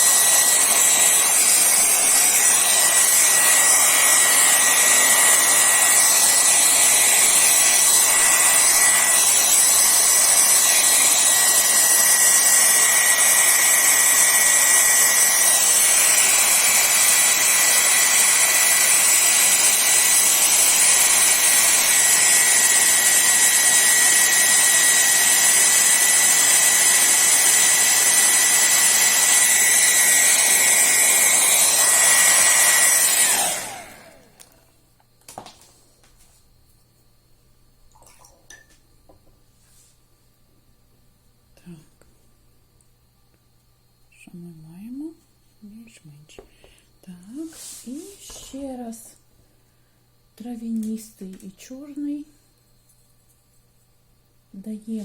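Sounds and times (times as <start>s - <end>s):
hair dryer blowing: 0.0s - 34.6s.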